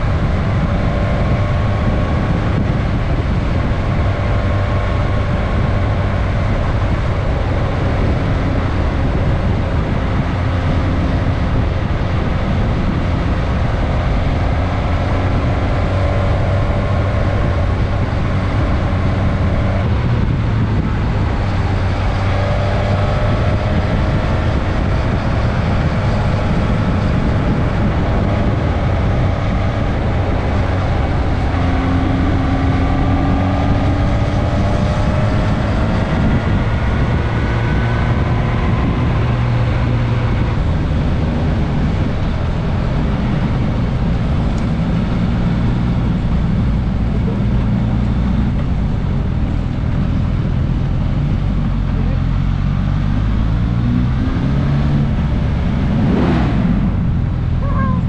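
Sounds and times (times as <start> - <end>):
heavy wind noise: 0.0 - 58.0
motorcycle engine running: 0.0 - 58.0.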